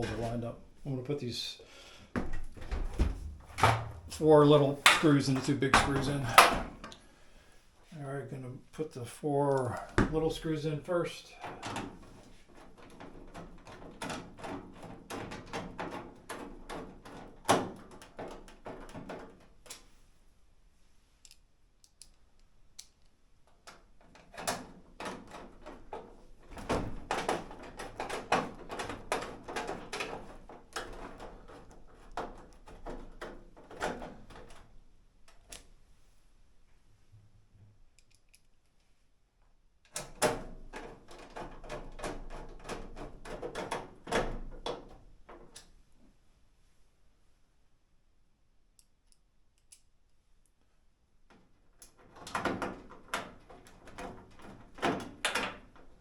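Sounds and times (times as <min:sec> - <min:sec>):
screws and metal panels clattering: 0:02.8 - 0:07.0, 0:11.3 - 0:19.9, 0:23.6 - 0:35.6, 0:39.9 - 0:45.7, 0:51.8 - 0:56.0.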